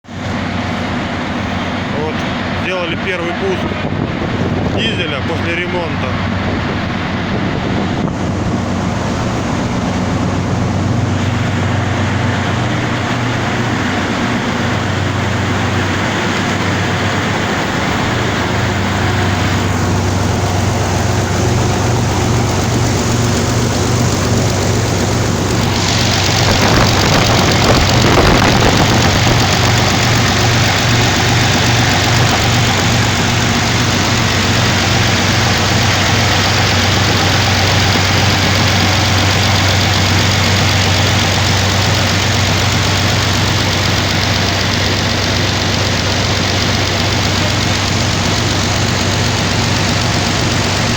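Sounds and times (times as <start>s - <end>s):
diesel tractor engine running: 0.0s - 50.9s.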